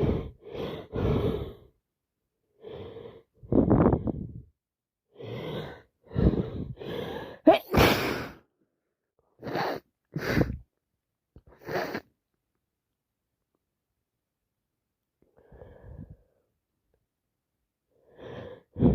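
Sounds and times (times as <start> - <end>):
woman sneezing: 7.5 - 8.4.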